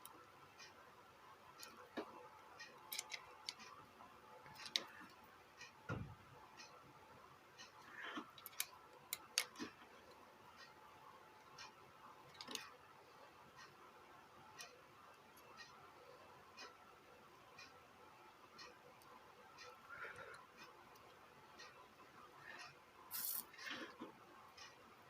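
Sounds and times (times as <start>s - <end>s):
small parts clicking and tapping: 1.5s - 3.8s, 4.4s - 6.8s, 7.6s - 10.7s, 11.4s - 12.8s, 22.4s - 24.8s.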